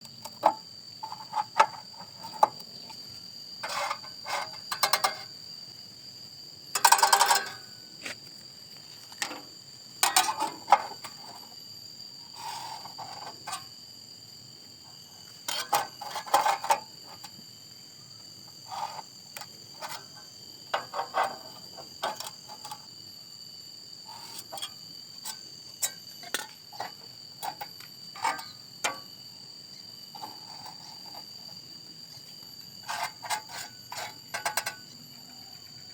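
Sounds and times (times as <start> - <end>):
sheet metal clicking and scraping: 6.8 - 7.7, 32.8 - 34.8.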